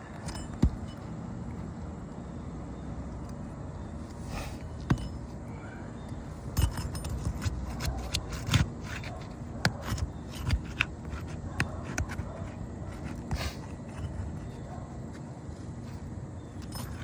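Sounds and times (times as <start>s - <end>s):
tools scraping shingles: 4.2s - 5.4s, 6.4s - 17.0s
hand tools clicking and knocking: 6.5s - 14.8s, 16.6s - 17.0s.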